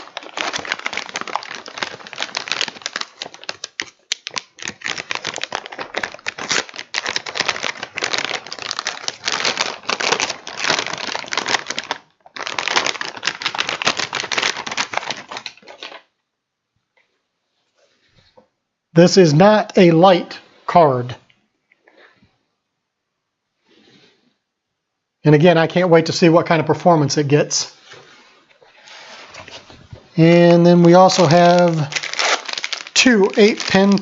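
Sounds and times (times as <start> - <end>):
plastic packaging crinkling: 0.0 - 16.1, 28.5 - 34.0.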